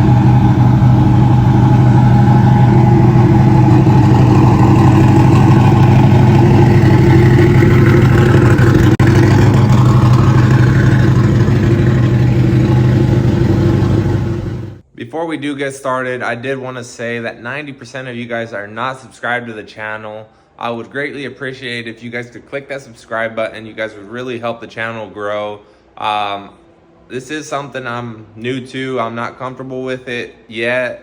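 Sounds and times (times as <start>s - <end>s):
loud car engine running: 0.0s - 14.8s.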